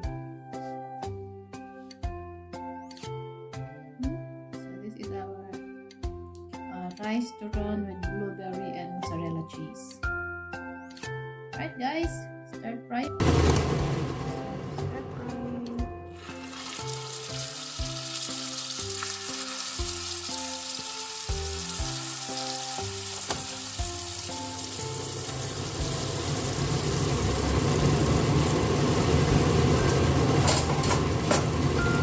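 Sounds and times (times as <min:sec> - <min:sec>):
food frying in hot oil: 0:16.2 - 0:32.0.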